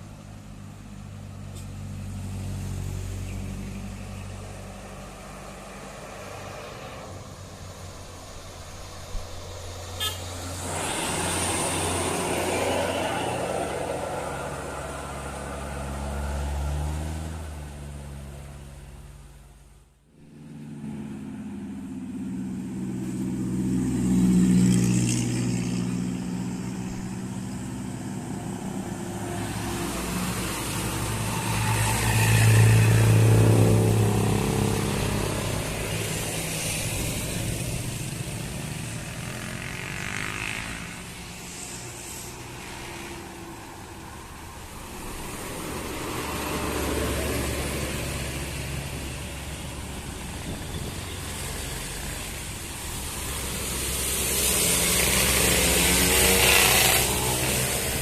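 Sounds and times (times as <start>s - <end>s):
buses driving uphill: 0.0s - 58.0s.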